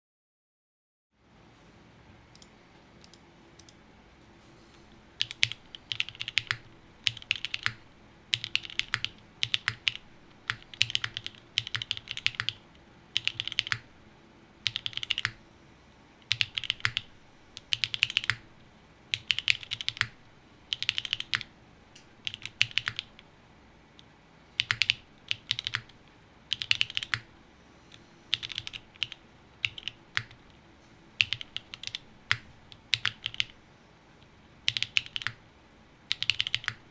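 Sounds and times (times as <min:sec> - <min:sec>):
mechanical keyboard typing: 0:05.2 - 0:12.6, 0:13.2 - 0:13.9, 0:14.6 - 0:15.4, 0:16.2 - 0:18.5, 0:19.1 - 0:21.5, 0:22.2 - 0:23.2, 0:24.6 - 0:27.3, 0:28.3 - 0:30.6, 0:31.2 - 0:33.6, 0:34.7 - 0:35.4, 0:36.1 - 0:36.9.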